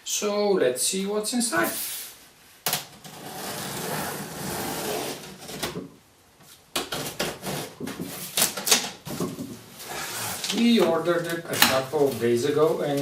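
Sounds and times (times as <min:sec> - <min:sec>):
cardboard sliding and scraping: 0:03.1 - 0:05.8, 0:09.8 - 0:10.8
cardboard rustles clicks and knocks: 0:06.7 - 0:09.7.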